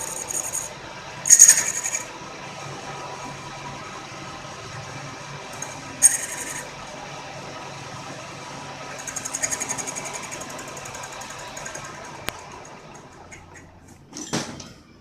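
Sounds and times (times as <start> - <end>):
fast high ticking of cutting: 0.0 - 2.1, 5.5 - 6.8, 8.9 - 13.9
lathe running: 0.0 - 14.1.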